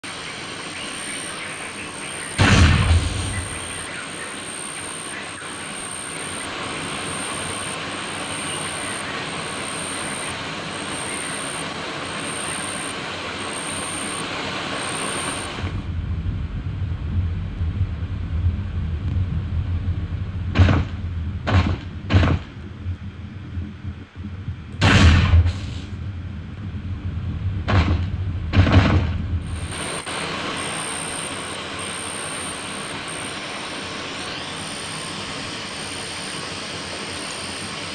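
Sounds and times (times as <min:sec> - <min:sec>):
water hiss: 0:00.0 - 0:15.7, 0:29.5 - 0:37.9
muffled underwater rumble: 0:01.7 - 0:04.6, 0:15.4 - 0:30.0.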